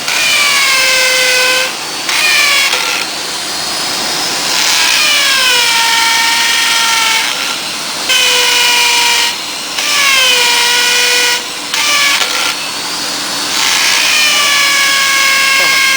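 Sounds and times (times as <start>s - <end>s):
electric power tool whining: 0.0s - 15.9s.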